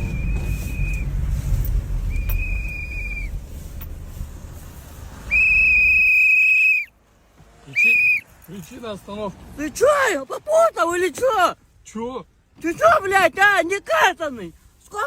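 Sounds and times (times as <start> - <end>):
whistle blasts: 0.0 - 1.2, 2.0 - 3.4, 5.2 - 6.9, 7.7 - 8.3.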